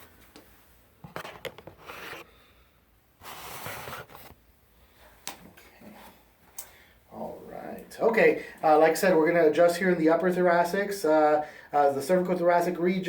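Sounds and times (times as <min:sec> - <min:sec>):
rustling and scraping handling noise: 0:00.2 - 0:02.3, 0:03.2 - 0:04.4.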